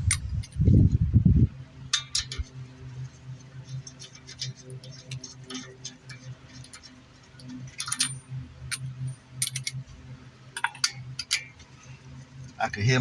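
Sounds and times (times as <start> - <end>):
steady low hum: 0.0 - 13.0
metallic clicks of tools: 1.9 - 2.5, 3.9 - 9.8, 10.6 - 11.5.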